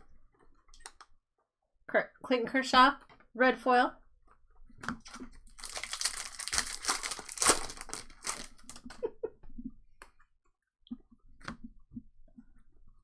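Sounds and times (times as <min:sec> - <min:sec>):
wrapper tearing and crinkling: 0:05.4 - 0:09.0.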